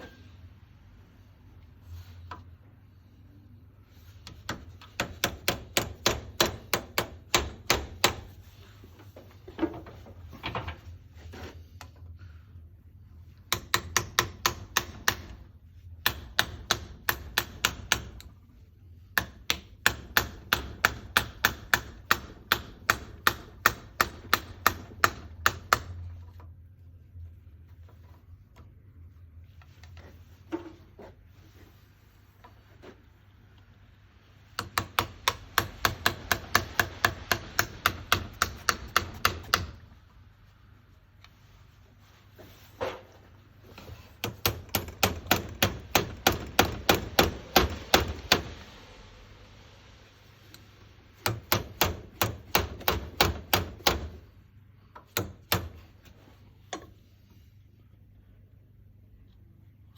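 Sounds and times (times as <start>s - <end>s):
hammer tapping: 4.2s - 8.4s, 13.4s - 15.4s, 16.0s - 18.4s, 19.2s - 26.2s, 34.5s - 39.8s, 43.9s - 48.6s, 51.2s - 54.2s, 55.1s - 55.8s.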